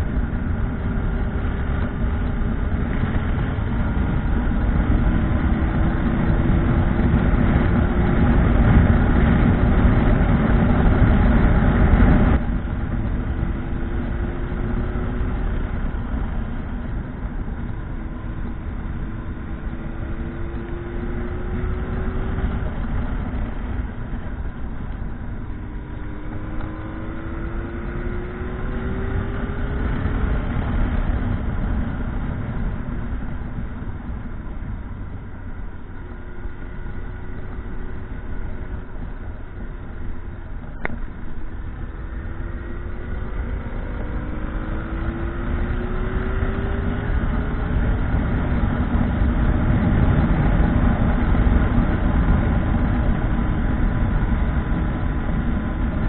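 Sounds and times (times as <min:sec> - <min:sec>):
wind noise on microphone: 0:00.0 - 0:35.5, 0:37.2 - 0:56.0
motorcycle engine accelerating: 0:00.0 - 0:56.0.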